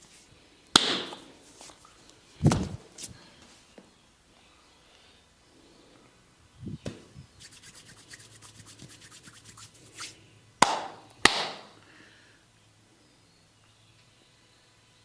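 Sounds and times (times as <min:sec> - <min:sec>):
sharp loud snaps: 0:00.7 - 0:01.2, 0:10.6 - 0:11.7
quick rubbing strokes: 0:07.2 - 0:10.2.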